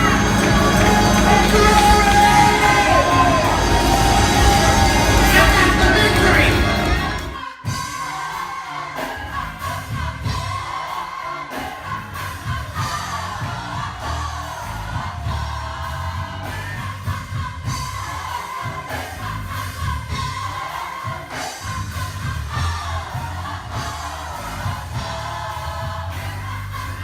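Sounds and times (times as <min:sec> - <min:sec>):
bass line: 0:00.0 - 0:08.0, 0:09.2 - 0:10.8, 0:11.7 - 0:18.3, 0:19.2 - 0:20.7, 0:21.6 - 0:27.0
worship music singing: 0:00.0 - 0:27.0.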